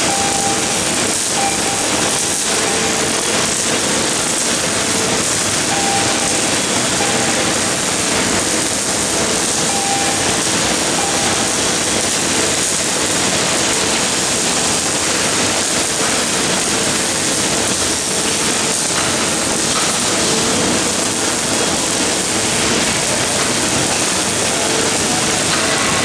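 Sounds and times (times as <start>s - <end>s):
welding arc hissing: 0.0s - 26.0s.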